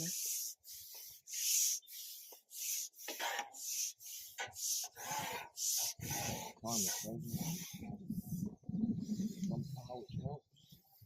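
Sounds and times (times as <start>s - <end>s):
fishing pole rubbing through hands: 0.0s - 8.6s.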